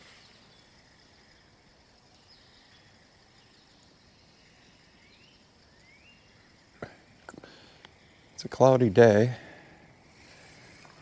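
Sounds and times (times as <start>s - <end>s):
faint bird chirp: 0.0s - 8.5s.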